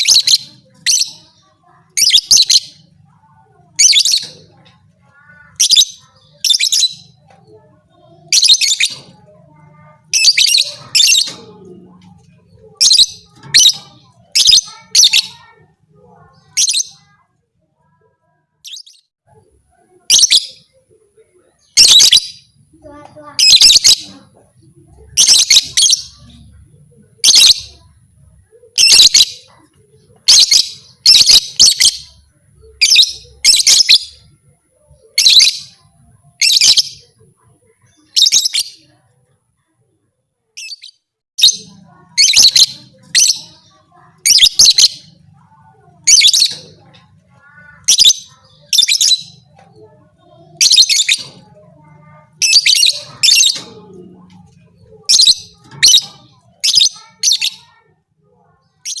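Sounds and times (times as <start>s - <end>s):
bird chirping harshly: 0.0s - 1.3s, 1.9s - 3.0s, 3.8s - 4.5s, 5.4s - 7.2s, 8.2s - 11.5s, 12.2s - 15.5s, 18.6s - 19.1s, 20.1s - 20.7s, 21.7s - 22.6s, 23.3s - 24.2s, 25.0s - 26.4s, 28.8s - 29.5s, 30.3s - 34.3s, 35.0s - 35.8s, 36.4s - 37.2s, 37.9s - 39.0s, 40.6s - 45.2s, 45.8s - 49.6s, 50.4s - 51.5s, 52.1s - 53.8s, 54.4s - 57.8s.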